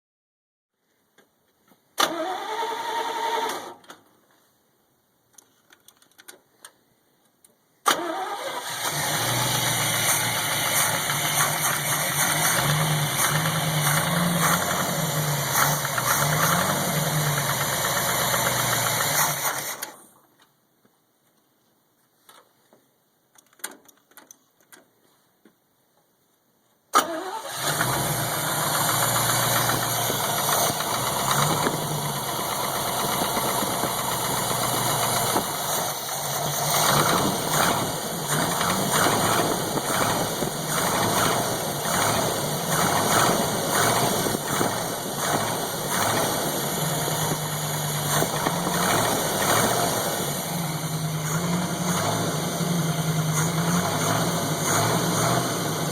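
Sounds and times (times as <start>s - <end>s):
engine starting and idling: 2.0s - 3.9s, 7.8s - 20.1s, 26.9s - 55.9s
engine ticking knock: 28.4s - 35.9s, 36.6s - 50.4s.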